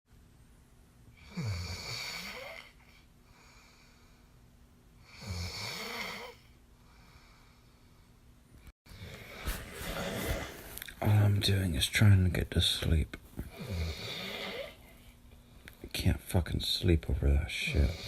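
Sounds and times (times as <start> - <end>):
man snoring: 1.2 - 2.8, 5.1 - 6.4, 13.5 - 14.8, 17.7 - 18.0.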